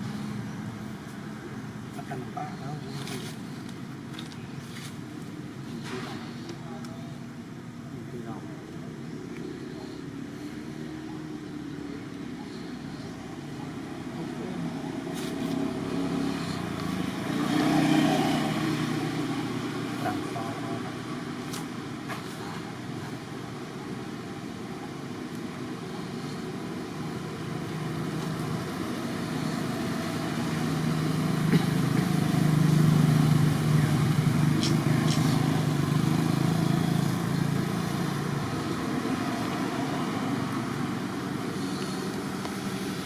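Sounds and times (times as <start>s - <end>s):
vehicle engine passing by: 9.5s - 22.6s, 25.8s - 43.0s.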